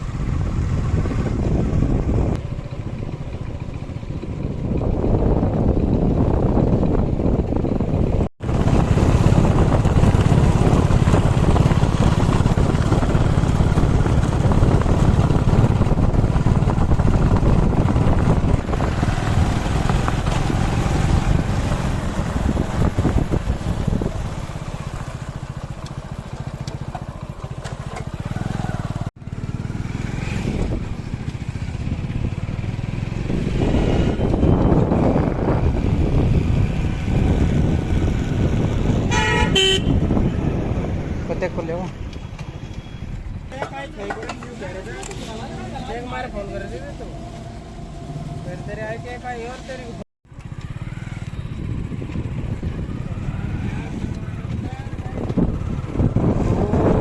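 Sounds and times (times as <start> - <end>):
backhoe diesel engine under load: 17.9 - 31.8.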